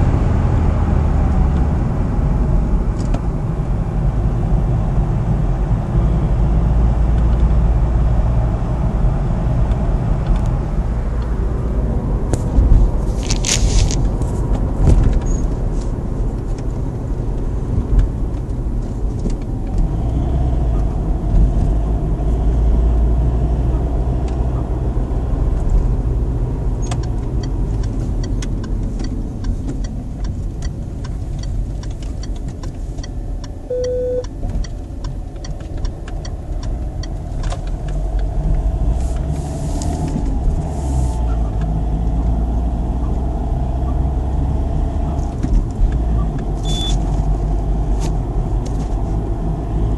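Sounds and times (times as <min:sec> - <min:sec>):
car engine rumbling: 0:00.0 - 0:49.9
regular ticking: 0:26.8 - 0:39.3.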